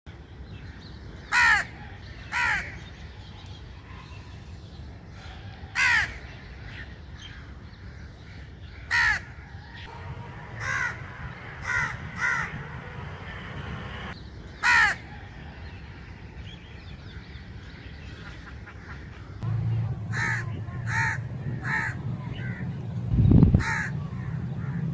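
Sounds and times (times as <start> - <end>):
crow cawing: 1.4 - 1.6, 8.9 - 9.2, 9.9 - 15.0, 19.4 - 24.9
low background rumble: 9.9 - 14.2, 19.4 - 24.9.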